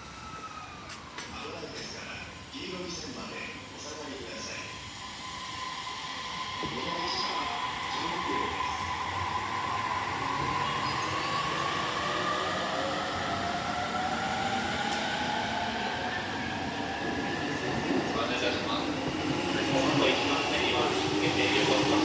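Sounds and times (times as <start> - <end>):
train running noise: 0.0 - 22.0.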